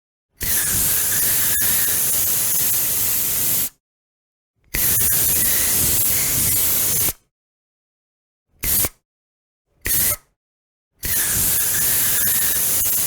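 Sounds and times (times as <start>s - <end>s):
aerosol spray can hissing: 11.2s - 13.0s.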